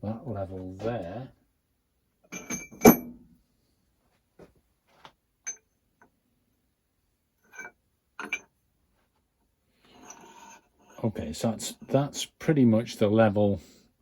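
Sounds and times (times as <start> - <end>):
metal parts clanking: 2.3 - 3.2, 7.6 - 8.5
light metal clinks and taps: 5.4 - 6.1, 7.5 - 8.5.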